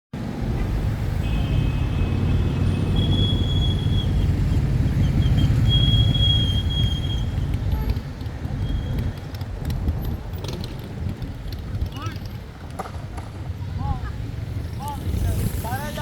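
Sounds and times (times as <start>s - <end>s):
vehicle rumbling past: 0.2s - 9.1s.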